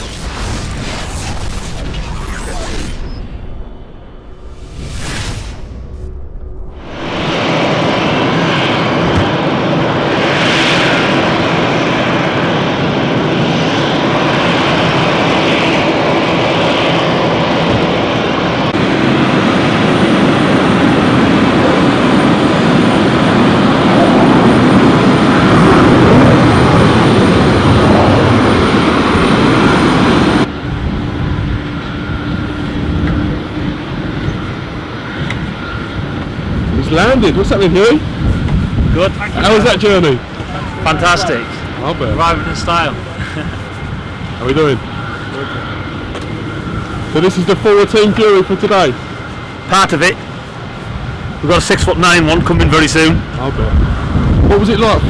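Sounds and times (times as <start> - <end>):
jet engines roaring with whine: 0.0 - 55.0.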